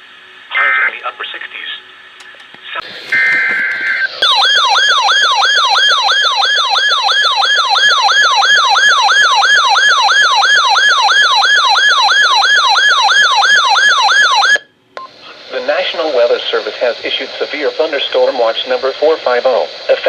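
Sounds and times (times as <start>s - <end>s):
siren-like alert wail: 3.2s - 14.7s.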